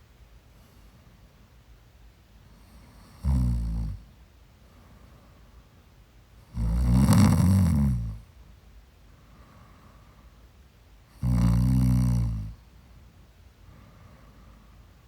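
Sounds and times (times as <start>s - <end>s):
person snoring: 3.2s - 4.0s, 6.5s - 8.2s, 11.2s - 12.6s.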